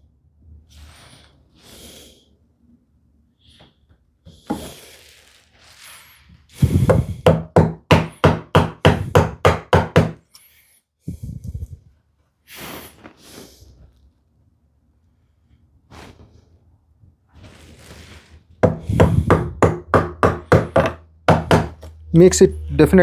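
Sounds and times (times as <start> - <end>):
gouge knocking into wood: 6.6 - 10.2, 18.6 - 21.9.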